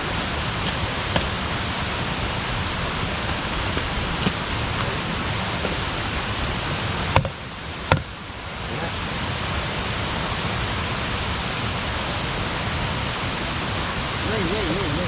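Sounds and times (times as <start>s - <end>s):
fire crackling pops: 0.0s - 8.2s
campfire hissing: 0.0s - 15.0s.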